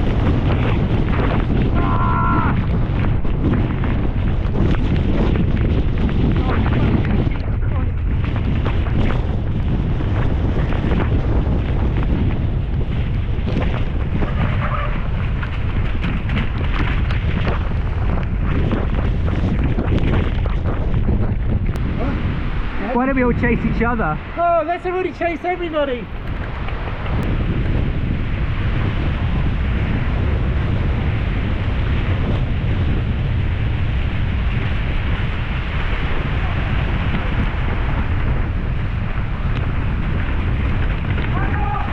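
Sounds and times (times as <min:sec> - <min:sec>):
bike rattling on rough trail: 0:00.0 - 0:01.8, 0:02.6 - 0:21.9, 0:25.4 - 0:41.9
wind buffeting microphone: 0:00.0 - 0:41.9.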